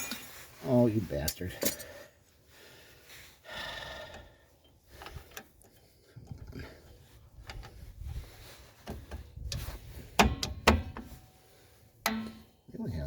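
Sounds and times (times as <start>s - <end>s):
metallic clicks and taps: 12.0s - 12.5s.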